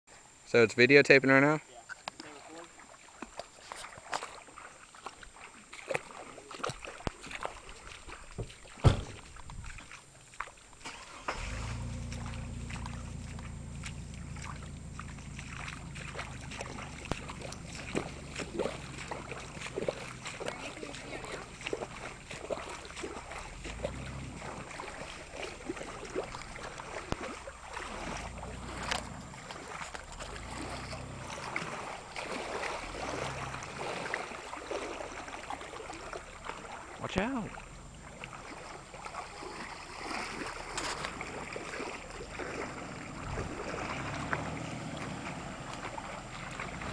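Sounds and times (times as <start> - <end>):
loud knock: 8.8 - 9.2
vehicle engine droning: 10.9 - 46.9.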